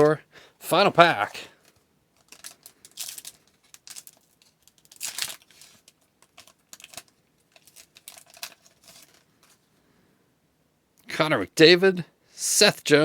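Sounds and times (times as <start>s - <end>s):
cards shuffling against wrapper: 1.0s - 9.7s
wrapper crinkling and tearing: 1.1s - 9.7s.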